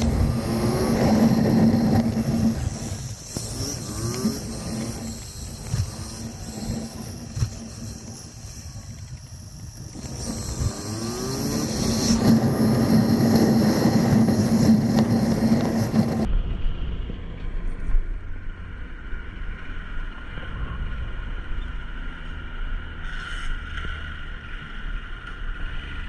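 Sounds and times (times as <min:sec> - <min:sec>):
wind rush over microphone: 0:00.0 - 0:18.3
motorcycle engine: 0:00.0 - 0:26.0.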